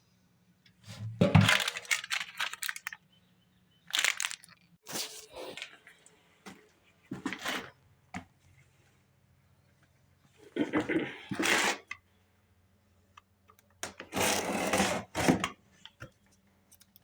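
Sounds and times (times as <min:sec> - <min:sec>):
packaging crackling and rustling: 0:01.4 - 0:03.0, 0:03.9 - 0:04.7.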